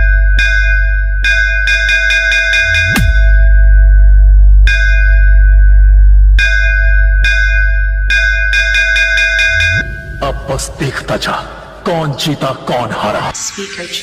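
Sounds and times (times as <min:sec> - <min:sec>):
deep sub-bass tone: 0:02.6 - 0:08.5.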